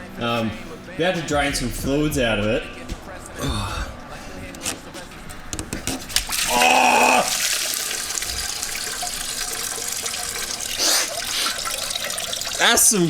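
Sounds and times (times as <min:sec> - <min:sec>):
fluid pouring and splashing: 0:05.9 - 0:13.0.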